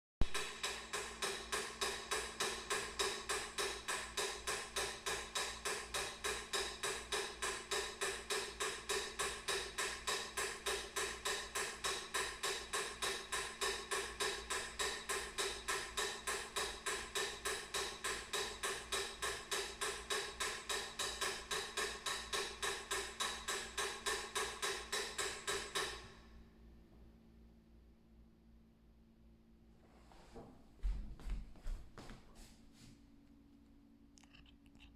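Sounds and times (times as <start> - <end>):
metronome ticking: 0.4 - 25.8.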